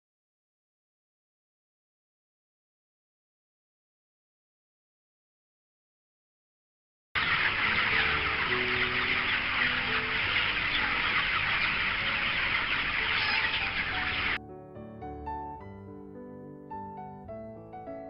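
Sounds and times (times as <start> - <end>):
chickens clucking and cheeping: 7.2 - 14.4.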